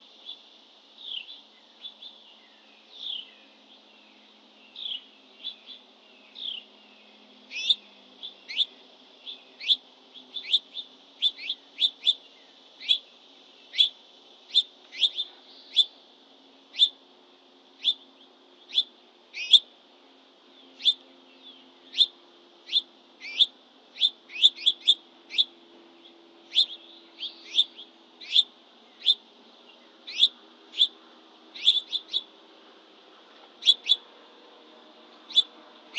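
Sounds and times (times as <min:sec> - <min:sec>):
songbird chirping: 0:00.0 - 0:35.9.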